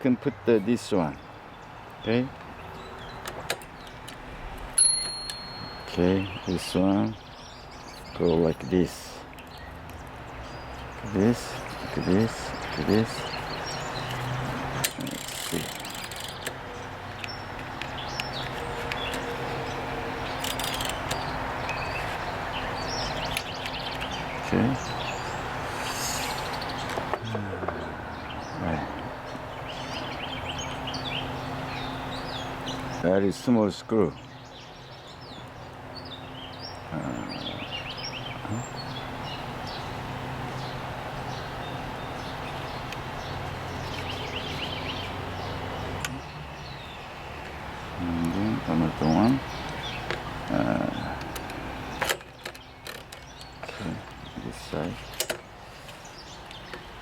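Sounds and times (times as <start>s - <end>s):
small birds chirping: 0.0s - 57.0s
background hiss: 24.4s - 27.2s.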